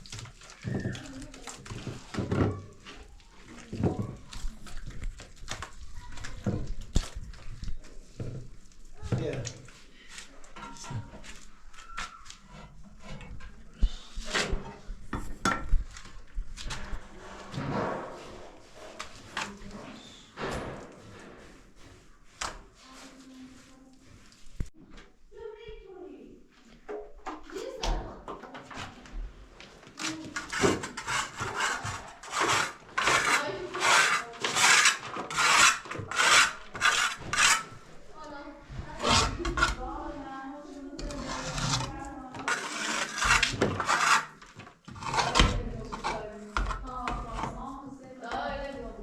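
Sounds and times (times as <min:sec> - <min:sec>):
hand tool rasping on wood: 0:30.3 - 0:37.8, 0:41.0 - 0:46.2.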